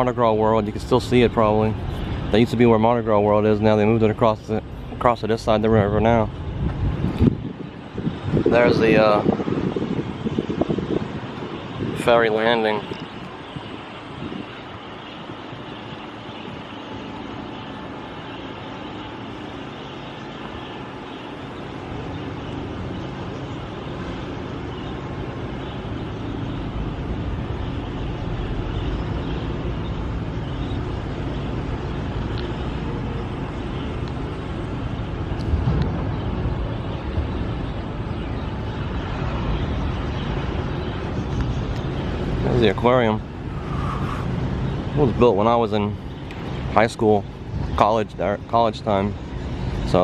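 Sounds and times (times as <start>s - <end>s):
steady traffic noise: 0.0s - 50.0s
deep rumble: 25.8s - 45.2s.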